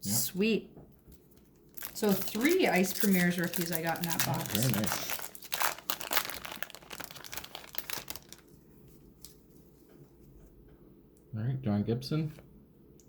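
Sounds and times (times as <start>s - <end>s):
wrapper crinkling and tearing: 1.3s - 8.6s, 9.2s - 9.4s.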